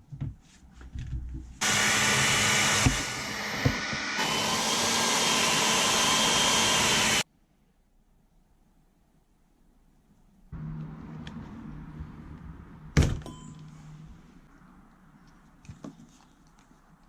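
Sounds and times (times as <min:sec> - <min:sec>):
heat gun blowing: 0:01.6 - 0:07.2.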